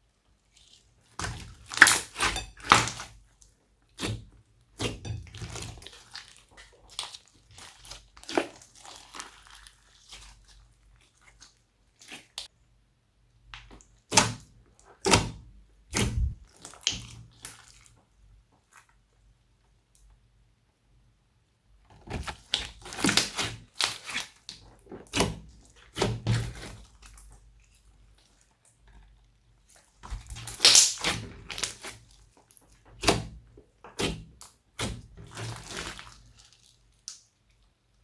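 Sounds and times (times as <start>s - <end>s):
wet sticky slime squishes: 0.4s - 12.5s, 13.4s - 19.1s, 21.9s - 38.0s.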